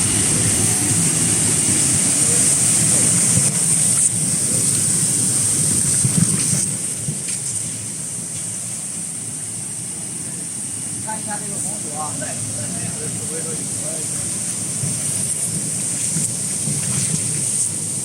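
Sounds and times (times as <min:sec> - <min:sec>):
steady high hiss: 0:00.0 - 0:18.0
washing machine water churning: 0:10.9 - 0:18.0.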